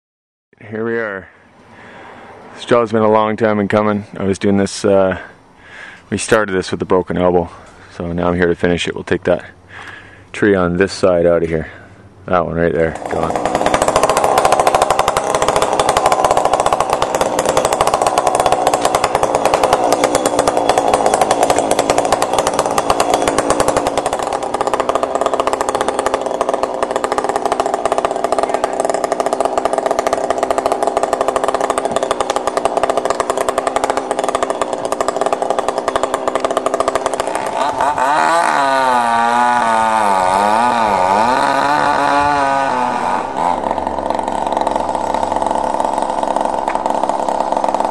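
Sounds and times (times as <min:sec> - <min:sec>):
chainsaw cutting into tree: 0:13.0 - 0:47.9.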